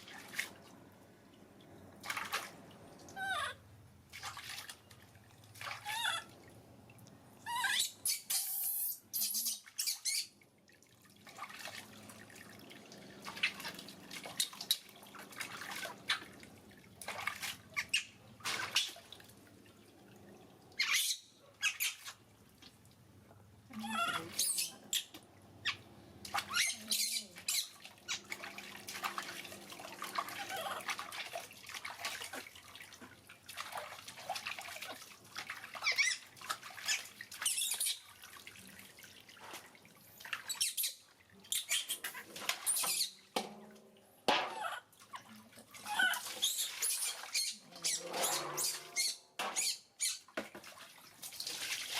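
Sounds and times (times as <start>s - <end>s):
splashy handling noises: 0.0s - 3.2s, 4.0s - 7.0s, 10.5s - 20.8s, 25.1s - 43.7s, 44.3s - 51.9s
baby monkey squeaking: 7.5s - 10.3s, 23.8s - 25.8s, 26.5s - 28.2s, 40.5s - 43.1s, 45.9s - 50.2s.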